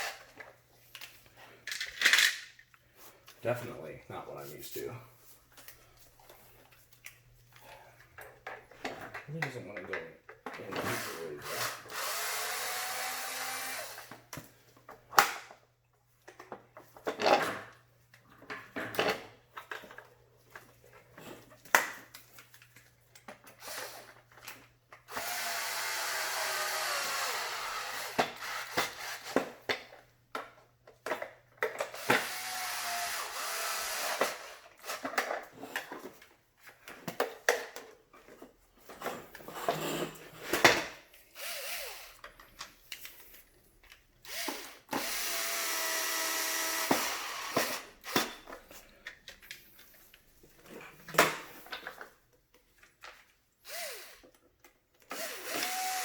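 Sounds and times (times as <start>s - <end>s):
knocks and clicks of handled parts: 0.2s - 3.4s, 28.2s - 32.4s, 34.1s - 41.0s
power screwdriver whirring: 10.9s - 14.2s, 25.1s - 29.5s, 31.9s - 35.1s, 41.4s - 42.2s, 44.3s - 48.3s, 53.6s - 54.3s, 55.1s - 56.0s.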